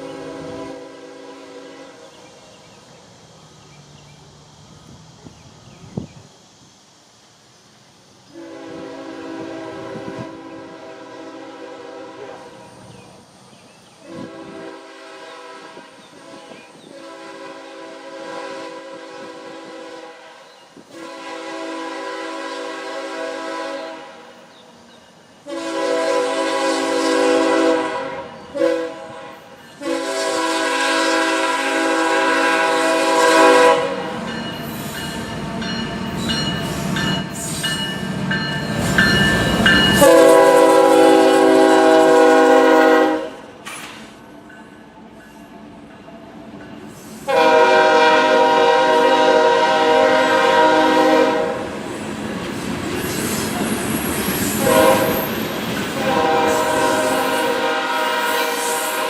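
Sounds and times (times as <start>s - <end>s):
locomotive air horn blasts: 0.0s - 2.0s, 8.3s - 12.7s, 14.0s - 24.4s, 25.4s - 34.3s, 39.6s - 43.5s, 47.2s - 51.7s, 54.6s - 55.3s, 56.0s - 59.0s
train rumble and clicking wheels: 0.0s - 59.0s.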